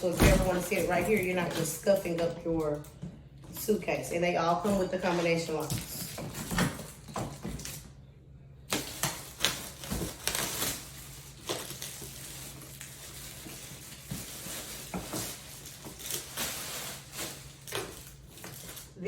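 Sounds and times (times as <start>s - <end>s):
plastic suitcases being handled: 0.0s - 3.8s, 8.8s - 19.0s.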